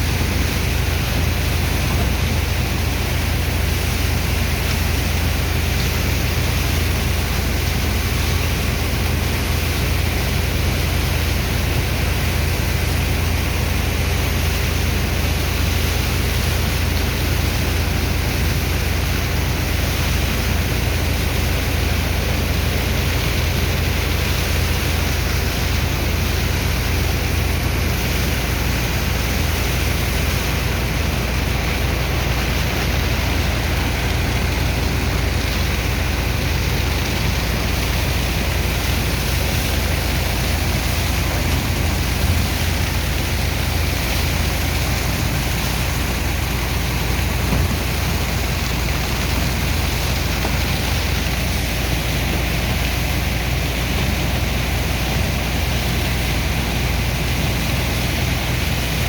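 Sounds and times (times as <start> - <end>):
pump engine rumbling: 0.0 - 59.0
water and sand rushing: 0.0 - 59.0.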